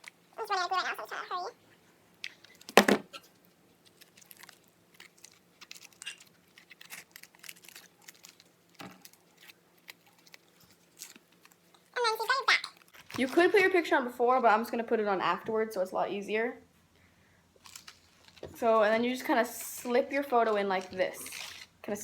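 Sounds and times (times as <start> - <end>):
small clicks and crackles: 2.2 - 13.4, 17.6 - 21.9
objects knocking on a surface: 2.7 - 3.1.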